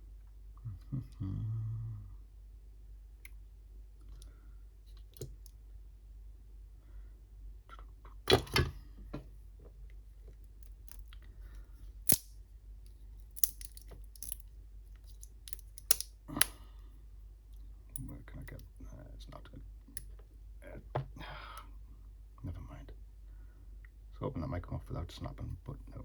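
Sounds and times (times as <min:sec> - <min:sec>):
clicks and knocks handling batteries: 0:13.3 - 0:16.6.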